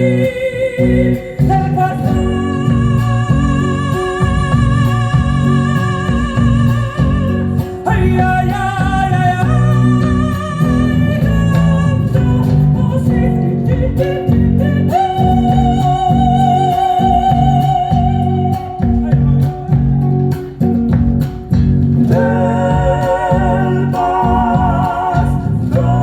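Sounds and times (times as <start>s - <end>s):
person singing with vibrato: 0.0s - 20.7s, 21.9s - 26.0s
guitar accompaniment: 0.0s - 26.0s
rhythmic low end: 0.0s - 26.0s.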